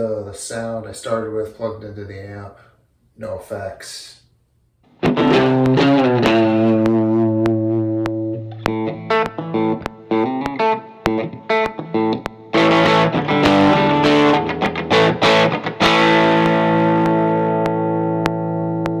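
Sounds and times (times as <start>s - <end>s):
electric guitar playing: 4.9s - 19.0s.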